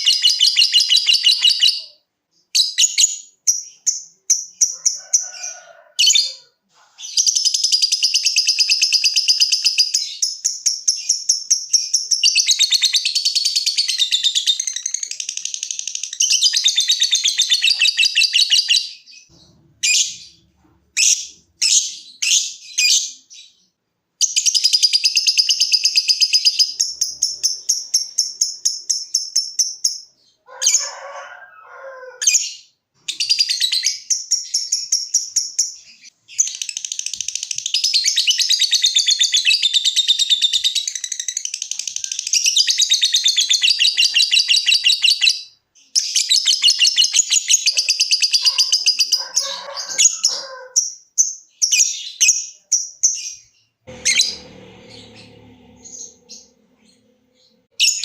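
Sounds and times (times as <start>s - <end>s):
lovebird chattering trills: 53.9s - 58.0s.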